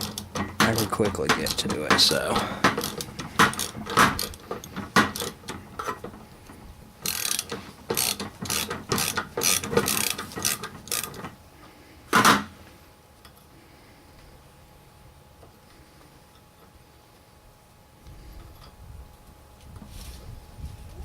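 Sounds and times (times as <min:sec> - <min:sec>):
ratchet wrench clicking: 0:07.0 - 0:11.2.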